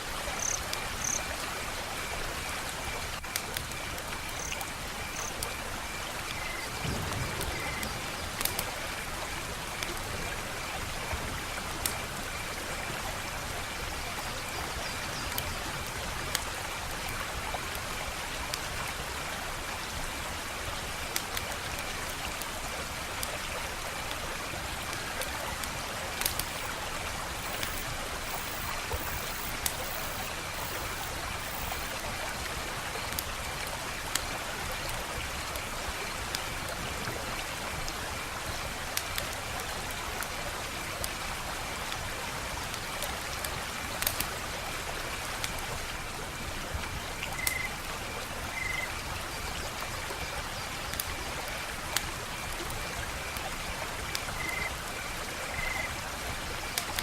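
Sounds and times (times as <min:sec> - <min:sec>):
wood fire crackling: 0:06.8 - 0:10.0, 0:25.0 - 0:32.0.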